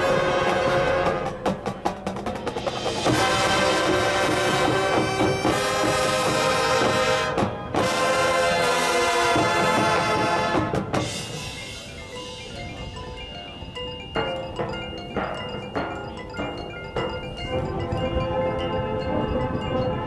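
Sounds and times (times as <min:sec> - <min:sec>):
marching band brass chords: 0:00.0 - 0:11.9
percussion: 0:00.0 - 0:20.0.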